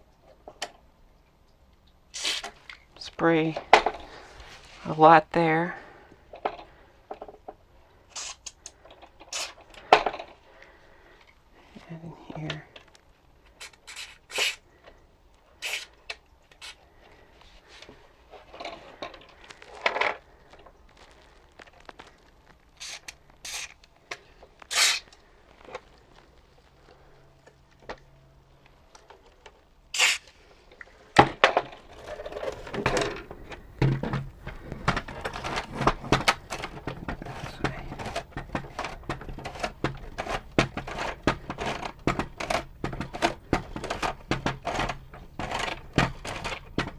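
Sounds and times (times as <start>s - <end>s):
clicks and knocks of parts: 6.3s - 11.4s, 17.8s - 26.0s, 27.4s - 46.9s.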